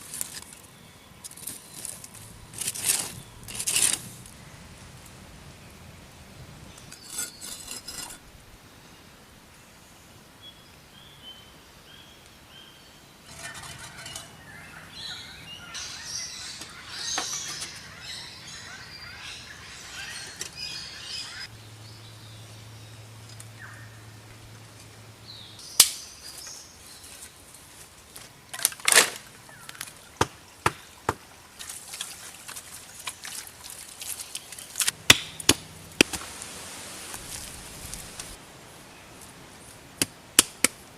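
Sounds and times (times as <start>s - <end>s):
rustling and scraping: 0.0s - 4.3s, 6.8s - 8.2s, 13.3s - 14.5s.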